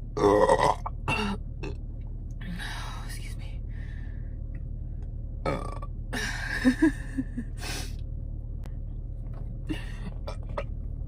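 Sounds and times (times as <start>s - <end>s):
weak throaty burps: 0.2s - 1.8s, 5.4s - 5.9s.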